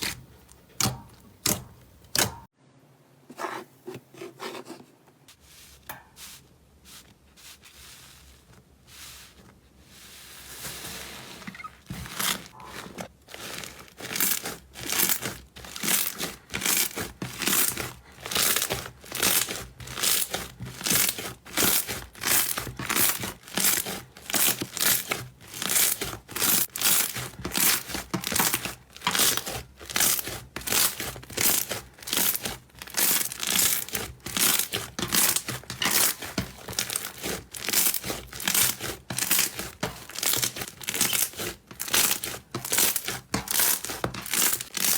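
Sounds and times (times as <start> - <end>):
slime crackling while squeezed: 13.3 - 44.9.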